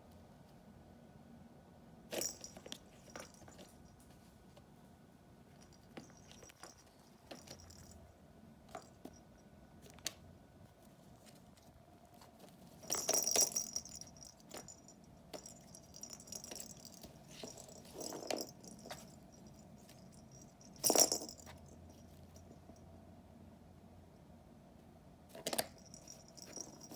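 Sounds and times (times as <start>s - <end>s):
toy box rattling and scraping: 12.6s - 21.6s, 25.7s - 26.9s.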